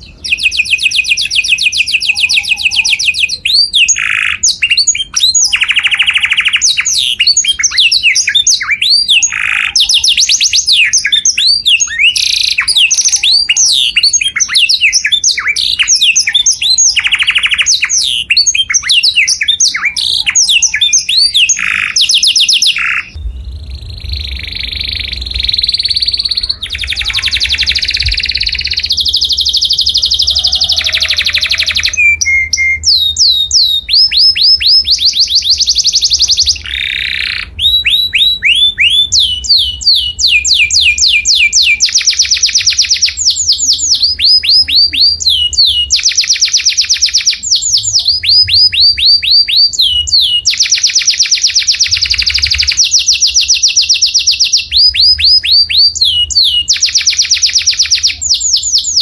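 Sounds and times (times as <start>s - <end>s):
canary singing: 0.0s - 59.0s
steady low hum: 23.0s - 33.9s.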